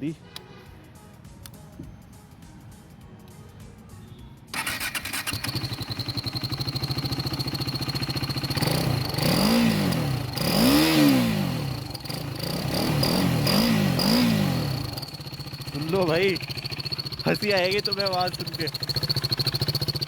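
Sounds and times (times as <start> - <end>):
motorcycle engine idling and revving: 4.4 - 20.0.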